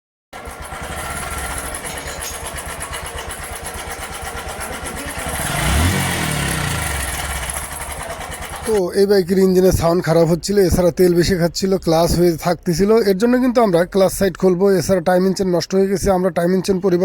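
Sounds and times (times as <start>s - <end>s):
motorcycle engine idling and revving: 0.4s - 9.9s.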